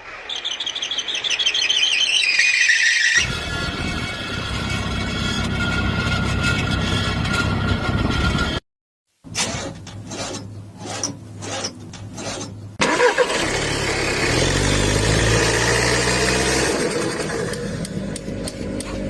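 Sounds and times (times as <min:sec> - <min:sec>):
car engine cranking and starting: 0:09.3 - 0:19.0
engine revving: 0:12.8 - 0:19.0.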